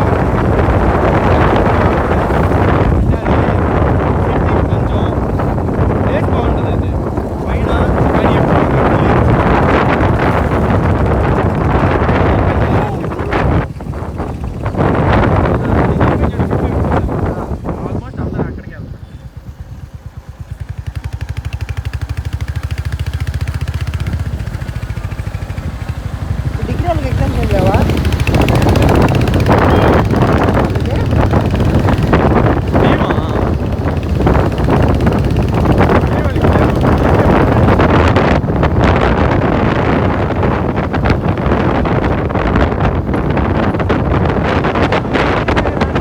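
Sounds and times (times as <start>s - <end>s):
motorcycle engine running: 0.0s - 46.0s
wind buffeting microphone: 0.0s - 46.0s.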